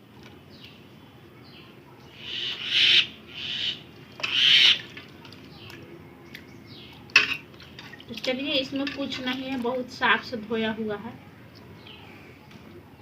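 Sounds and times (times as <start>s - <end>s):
water sloshing in a bowl: 3.8s - 10.8s.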